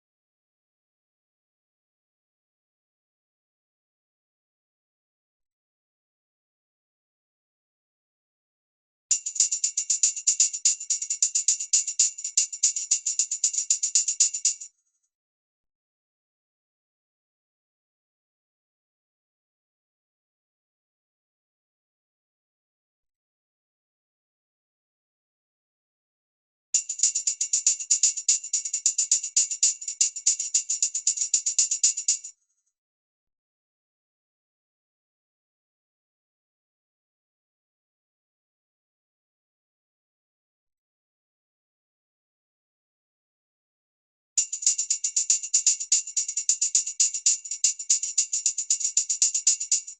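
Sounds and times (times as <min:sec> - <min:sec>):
tambourine jingles rattling: 0:09.1 - 0:14.7, 0:26.8 - 0:32.3, 0:44.4 - 0:49.9.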